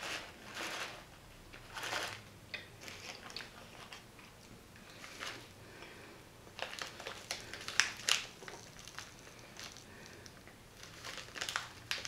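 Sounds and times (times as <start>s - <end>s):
sweet packet crinkling: 0.0s - 2.2s, 6.5s - 12.0s.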